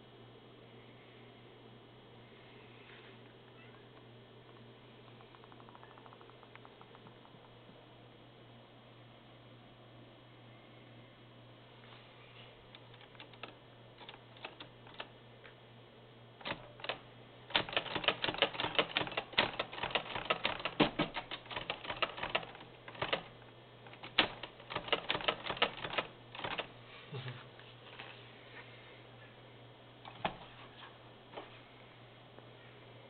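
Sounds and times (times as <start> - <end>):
manual typewriter typing: 12.7 - 15.1, 16.4 - 26.7.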